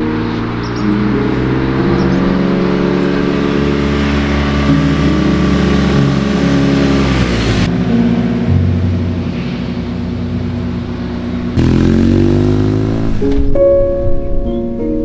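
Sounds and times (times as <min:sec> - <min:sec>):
motorcycle engine accelerating: 0:00.2 - 0:08.2, 0:10.1 - 0:13.6.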